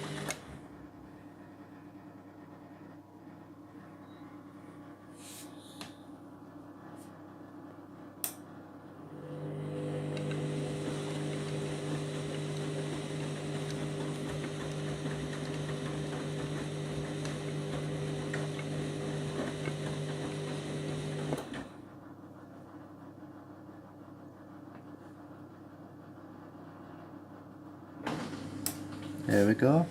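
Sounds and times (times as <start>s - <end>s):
washing machine humming: 0.0s - 5.1s, 6.1s - 29.9s
click: 8.2s - 8.4s.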